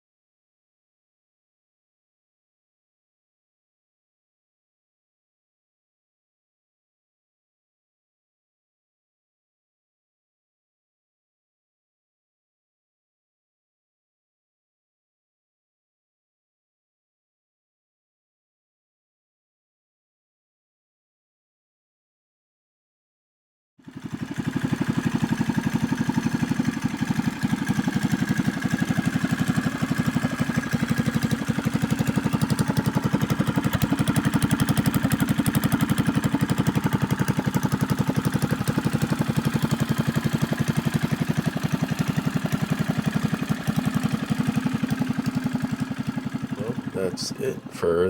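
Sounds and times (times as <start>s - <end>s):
small engine idling: 23.8s - 48.0s.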